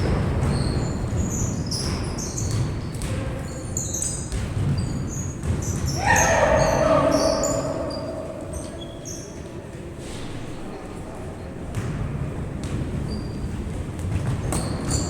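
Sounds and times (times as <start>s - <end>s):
person shouting: 6.0s - 8.9s
low rumbling noise: 6.0s - 9.7s.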